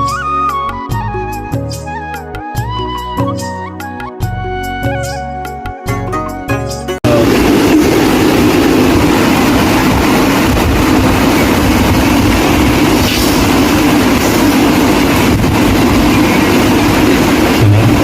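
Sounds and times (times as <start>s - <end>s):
train rumbling on track: 7.0s - 18.0s.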